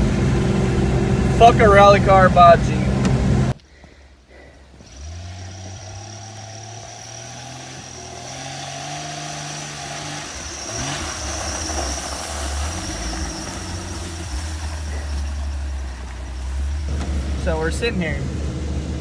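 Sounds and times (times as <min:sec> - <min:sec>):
car engine revving: 0:00.0 - 0:03.6, 0:04.3 - 0:19.0
tyres hissing in snow: 0:04.3 - 0:19.0.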